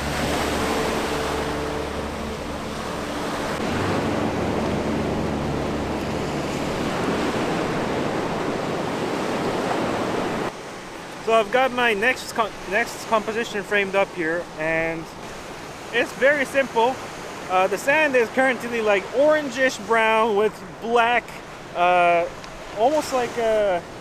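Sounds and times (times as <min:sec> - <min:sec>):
wind on microphone: 0:00.0 - 0:10.5
surf washing onto beach: 0:00.0 - 0:24.0.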